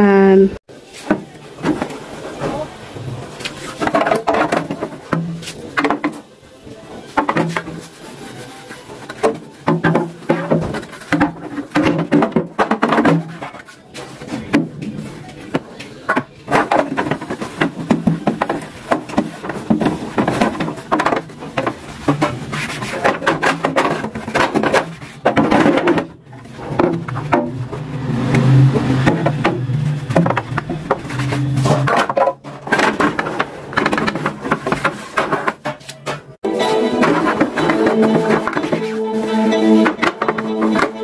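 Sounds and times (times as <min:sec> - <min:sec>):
refrigerator drawers clattering: 0:03.3 - 0:06.4, 0:07.0 - 0:36.4.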